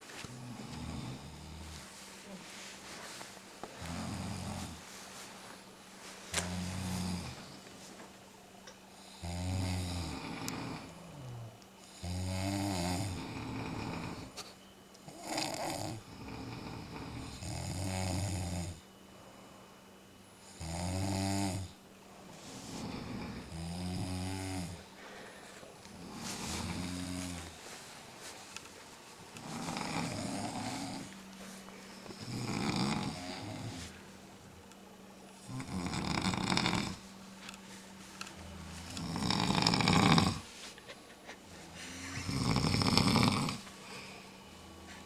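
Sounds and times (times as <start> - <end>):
person snoring: 0.3 - 1.8, 3.8 - 4.8, 6.4 - 7.6, 9.0 - 14.4, 22.7 - 25.2, 25.9 - 27.6, 29.4 - 31.2, 32.0 - 33.9, 35.4 - 37.1, 38.6 - 40.5, 41.6 - 44.4.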